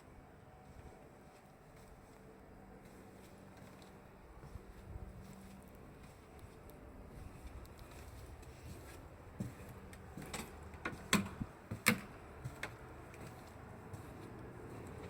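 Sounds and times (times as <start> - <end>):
low background noise: 0.0 - 15.0
sharp clicks and knocks: 9.9 - 12.8.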